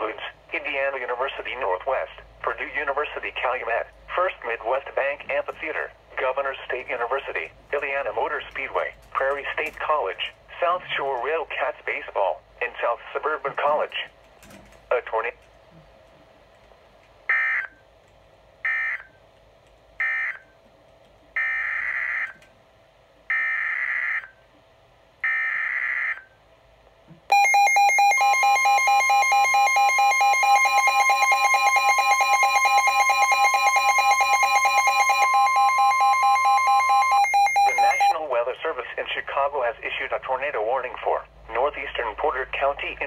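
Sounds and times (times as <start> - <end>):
buzzy pulsing radio alarm: 27.3 - 38.2
steady warning tone: 27.3 - 38.2.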